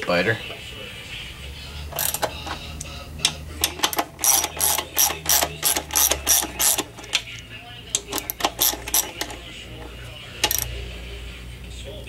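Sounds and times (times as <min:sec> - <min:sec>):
ratchet wrench clicking: 0:02.0 - 0:07.4, 0:08.0 - 0:09.5, 0:10.4 - 0:10.7.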